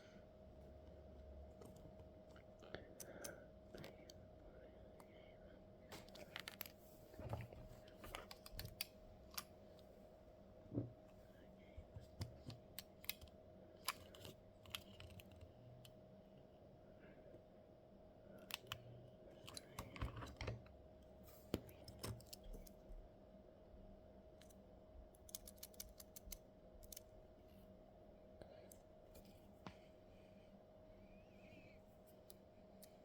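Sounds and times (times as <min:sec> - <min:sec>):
faint steady hum: 0:00.0 - 0:33.0
clicks of small parts handled: 0:12.0 - 0:15.9, 0:21.6 - 0:22.8, 0:25.2 - 0:27.1.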